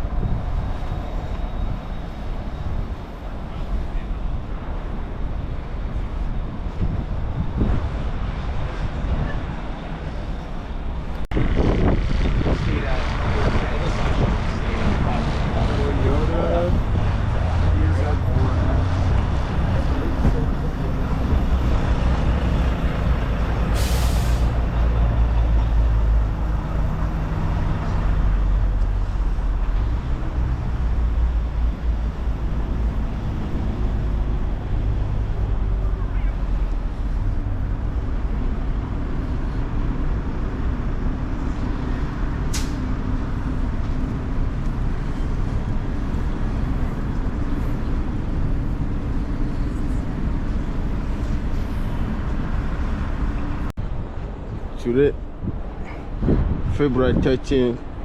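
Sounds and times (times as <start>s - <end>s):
diesel engine running: 0.0s - 54.6s
air brakes hissing: 23.6s - 24.7s
sharp click: 42.5s - 42.8s.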